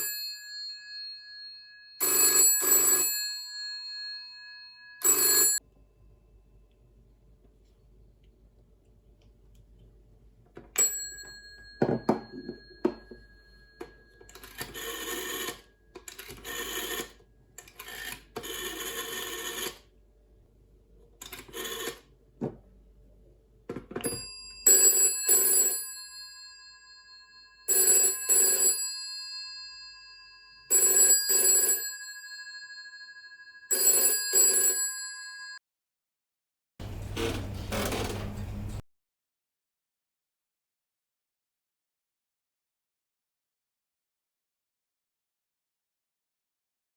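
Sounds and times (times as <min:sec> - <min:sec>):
buzzy telephone ringing: 0:00.0 - 0:05.6, 0:10.8 - 0:17.2, 0:17.8 - 0:19.9, 0:21.3 - 0:22.1, 0:24.0 - 0:35.6
telephone bells double ring: 0:00.0 - 0:05.6, 0:10.8 - 0:17.2, 0:17.8 - 0:19.8, 0:21.3 - 0:22.1, 0:24.0 - 0:35.6.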